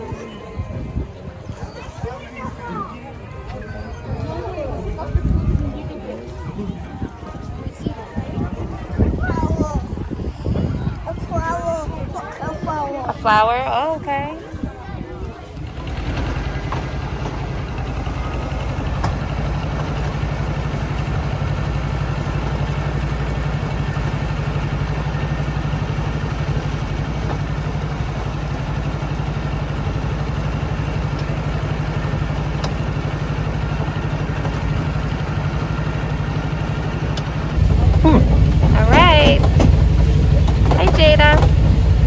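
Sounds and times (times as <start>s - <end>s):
tractor engine running: 13.2s - 42.0s.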